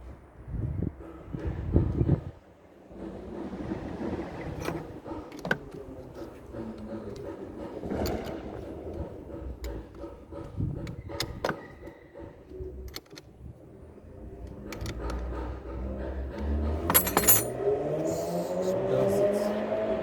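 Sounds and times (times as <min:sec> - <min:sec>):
car engine starting: 0:01.4 - 0:20.0
metal tools clinking: 0:16.8 - 0:17.6.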